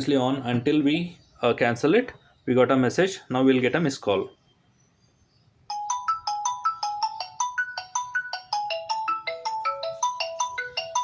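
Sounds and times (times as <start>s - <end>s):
phone melodic ringtone: 5.7s - 11.0s.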